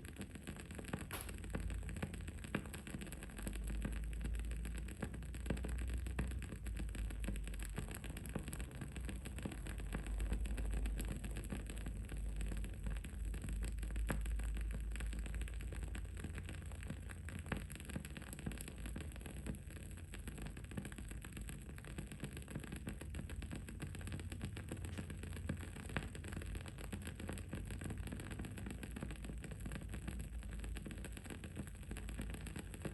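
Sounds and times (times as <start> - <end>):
candle wick crackling: 0.8 - 3.7.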